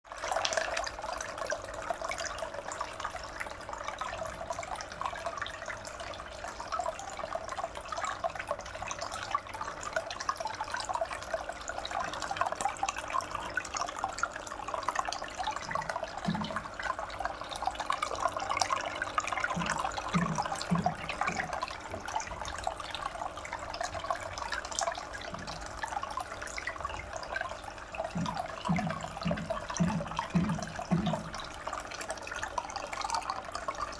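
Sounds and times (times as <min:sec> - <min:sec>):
water trickling down fountain: 0:00.0 - 0:33.9
low water plops: 0:11.9 - 0:33.7.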